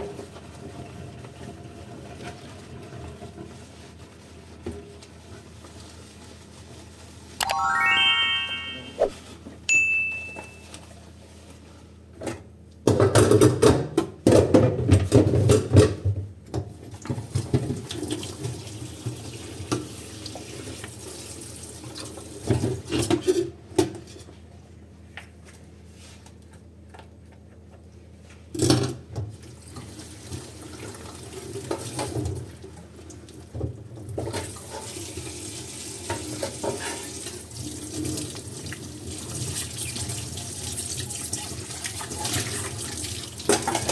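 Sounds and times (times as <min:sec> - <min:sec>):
tap water running and splashing: 0:34.2 - 0:43.9.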